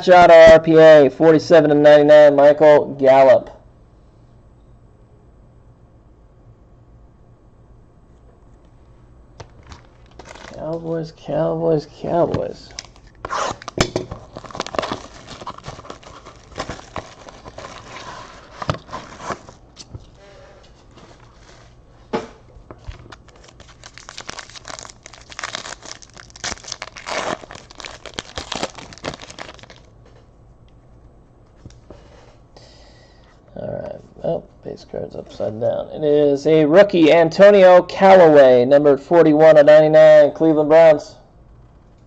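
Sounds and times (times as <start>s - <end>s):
plastic and foil wrapping crinkling: 9.4s - 10.9s, 12.7s - 20.2s, 22.7s - 29.9s.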